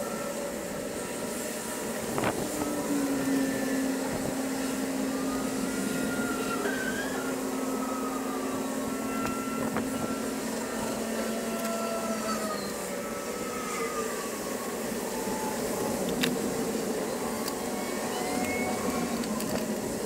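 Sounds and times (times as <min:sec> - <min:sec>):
engine humming: 0:00.6 - 0:13.8.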